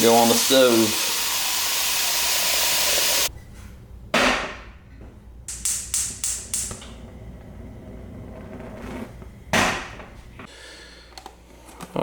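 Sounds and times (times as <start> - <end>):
tap water running into pot: 0.0 - 3.3.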